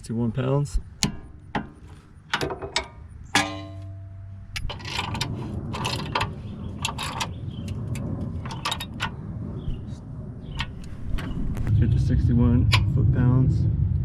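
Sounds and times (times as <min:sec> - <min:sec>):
metallic clank: 0:01.0 - 0:09.2.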